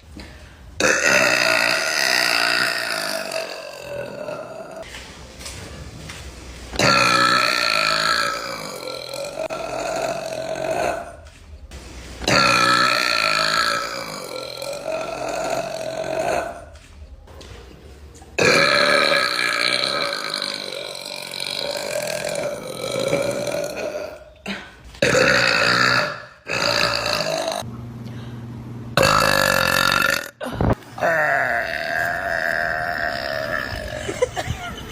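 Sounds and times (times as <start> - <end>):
woman burping: 0.8 - 4.8, 6.8 - 11.2, 12.3 - 16.7, 18.4 - 27.6, 29.0 - 34.6.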